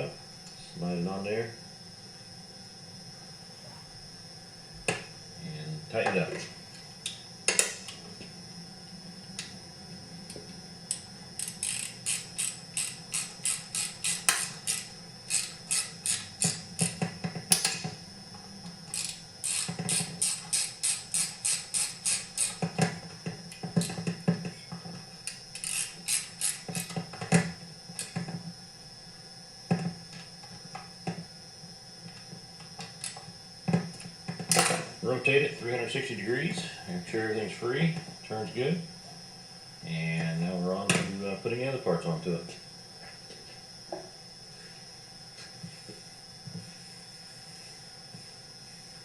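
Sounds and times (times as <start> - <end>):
ratchet wrench clicking: 10.9 - 17.8, 18.9 - 22.6, 25.3 - 27.0.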